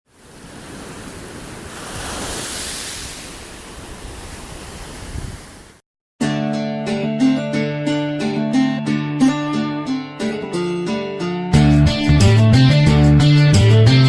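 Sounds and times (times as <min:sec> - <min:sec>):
ocean surf rushing: 0:00.1 - 0:05.8
acoustic guitar music: 0:06.2 - 0:14.0.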